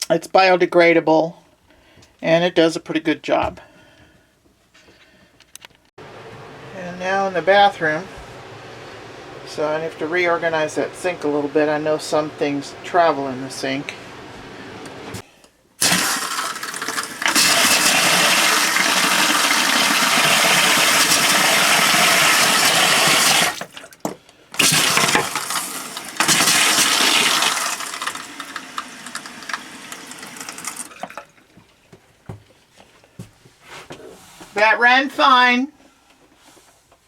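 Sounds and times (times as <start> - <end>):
water pouring into a sink: 15.8 - 24.0, 24.6 - 31.4.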